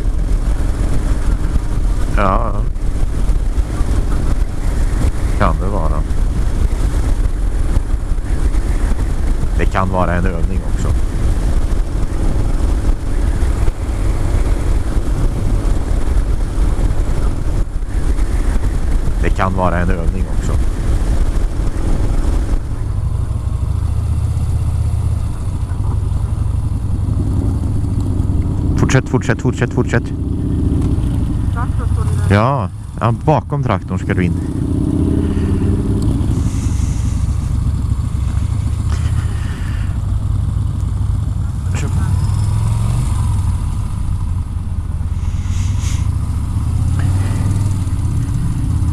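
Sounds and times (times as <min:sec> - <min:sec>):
wind rumble on microphone: 0:00.0 - 0:29.4, 0:34.3 - 0:48.9
motorcycle engine running: 0:00.0 - 0:48.9.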